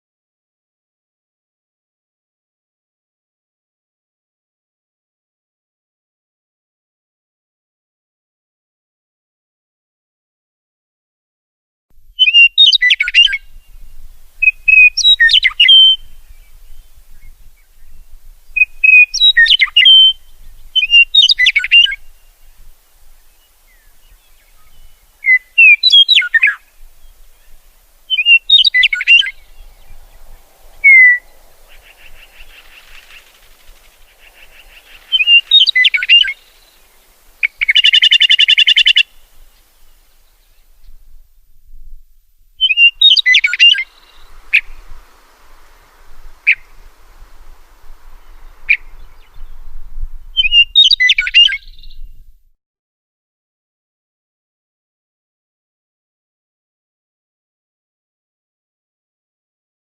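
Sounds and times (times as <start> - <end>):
songbird chirping and whistling: 12.2 - 41.1, 42.6 - 52.2
buzzy bird trill: 14.4 - 16.7, 18.6 - 22.4, 24.2 - 40.0, 42.6 - 52.0
harsh buzzy bird call: 23.4 - 40.3, 42.6 - 49.6.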